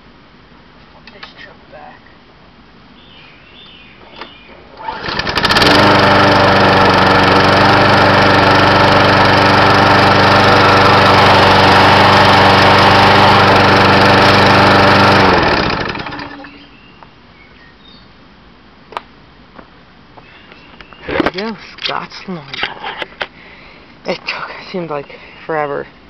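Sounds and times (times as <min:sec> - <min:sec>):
lawn mower engine running: 0:04.7 - 0:16.7.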